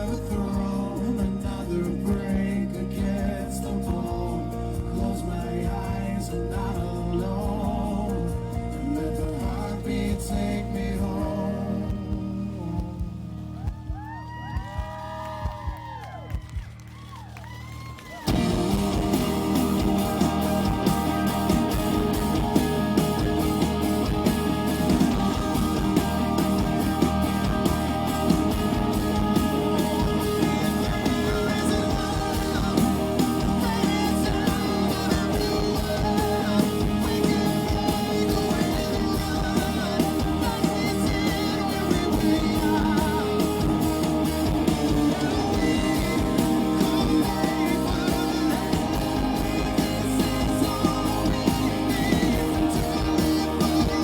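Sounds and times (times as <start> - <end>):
electric guitar: 17.6 - 54.0
steady drum beat: 18.2 - 54.0
live rock band playing: 18.3 - 54.0.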